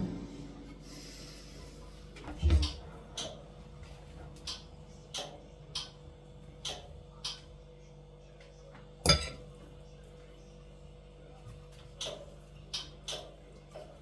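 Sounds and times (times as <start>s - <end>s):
kitchenware clicking: 9.1s - 9.4s
ringing clink: 9.1s - 9.4s.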